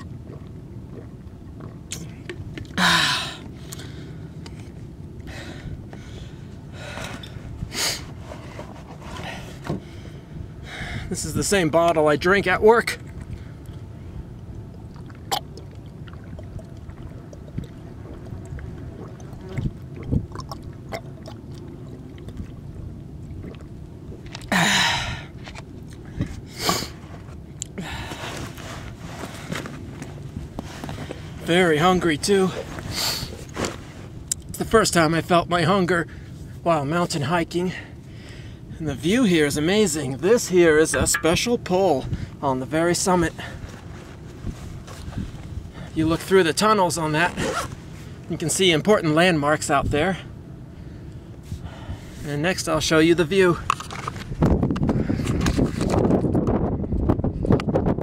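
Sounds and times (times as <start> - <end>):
person gulping and swallowing: 0.0 - 3.8, 14.4 - 26.3
person breathing heavily and gasping: 2.8 - 4.2
wind rumble on microphone: 4.5 - 11.7, 12.4 - 24.5, 25.4 - 35.1, 40.2 - 46.4, 53.2 - 58.0.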